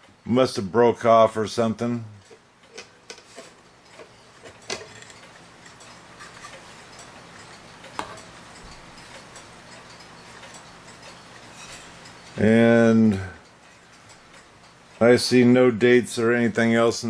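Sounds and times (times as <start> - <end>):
clock ticking: 2.0 - 17.0
sharp clock clicks: 3.8 - 15.6.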